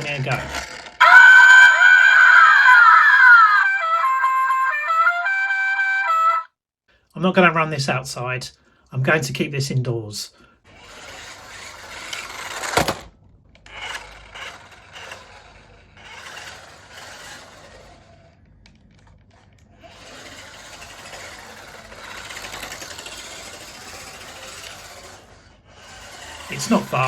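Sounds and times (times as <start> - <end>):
toy car motor whirring: 0.0 - 6.4, 10.6 - 27.0.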